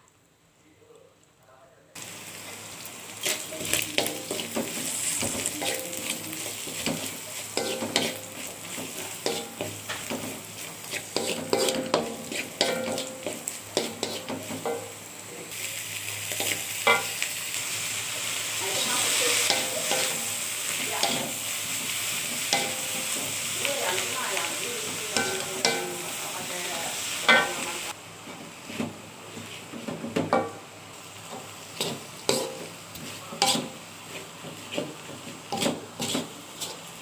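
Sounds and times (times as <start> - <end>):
food sizzling in a frying pan: 2.0 - 37.0
utensil scraping a pan: 3.2 - 14.8, 18.8 - 23.3, 31.8 - 37.0.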